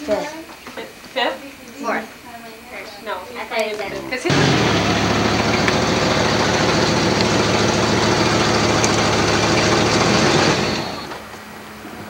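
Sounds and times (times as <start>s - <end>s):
engine idling: 4.3s - 11.2s.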